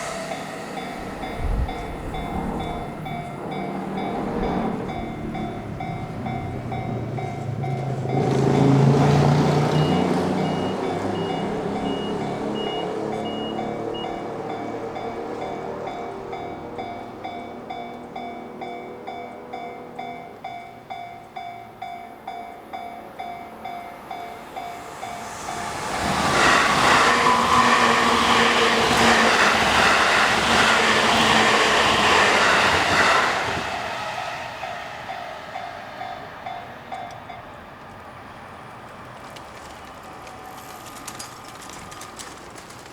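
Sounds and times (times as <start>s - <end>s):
level crossing bells ringing: 0.0s - 25.9s
train wheels clattering on rails: 0.0s - 42.9s.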